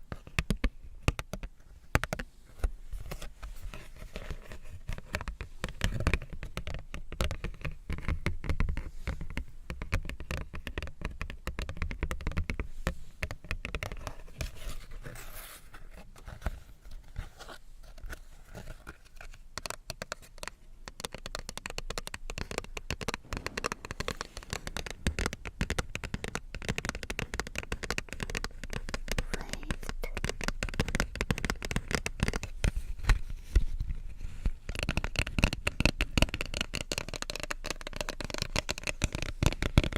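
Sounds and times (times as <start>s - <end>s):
fingers scratching paper card: 13.4s - 33.2s.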